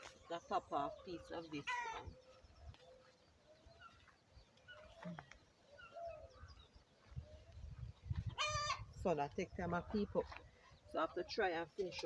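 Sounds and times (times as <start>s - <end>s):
faint bird calls: 0.8s - 8.9s.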